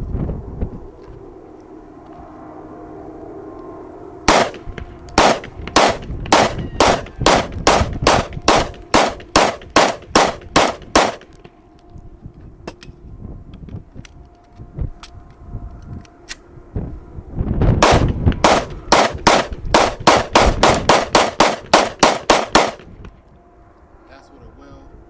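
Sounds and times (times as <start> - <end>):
gunshots: 4.3 - 11.2, 17.8 - 22.8.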